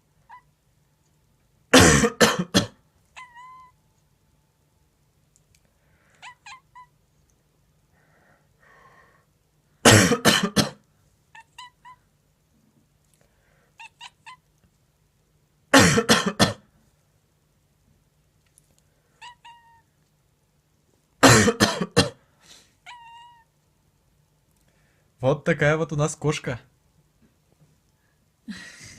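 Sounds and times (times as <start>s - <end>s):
cat chirping grumbles: 0.2s - 0.6s, 3.1s - 3.8s, 6.2s - 7.0s, 11.3s - 12.1s, 13.7s - 14.6s, 19.2s - 19.9s, 22.8s - 23.6s
person coughing: 1.7s - 2.8s, 9.8s - 10.8s, 15.7s - 16.7s, 21.2s - 22.2s.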